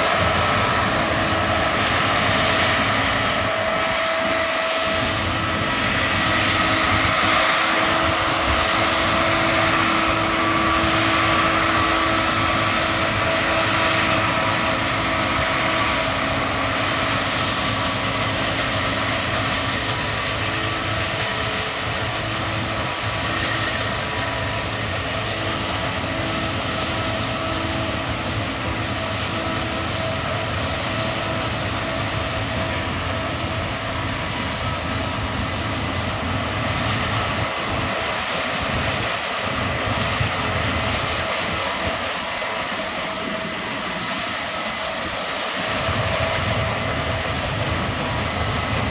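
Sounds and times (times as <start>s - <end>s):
combine harvester drone: 0.0s - 48.9s.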